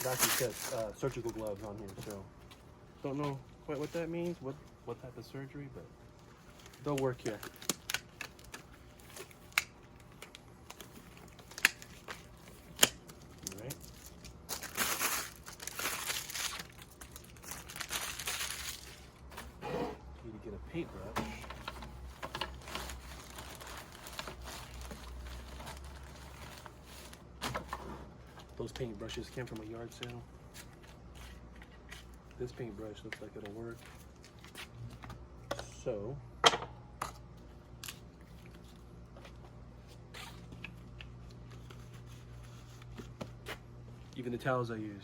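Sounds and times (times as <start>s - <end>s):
rustling of things handled: 0.0s - 35.8s
low steady hum: 0.0s - 45.0s.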